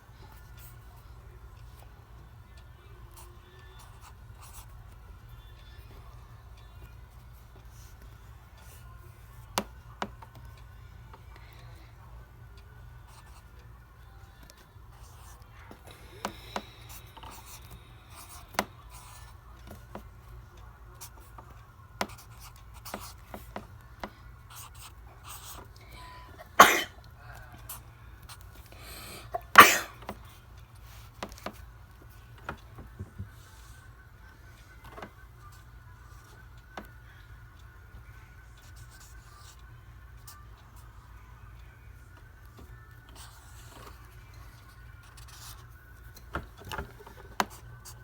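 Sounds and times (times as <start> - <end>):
person sneezing: 26.5 - 27.0, 29.0 - 30.0.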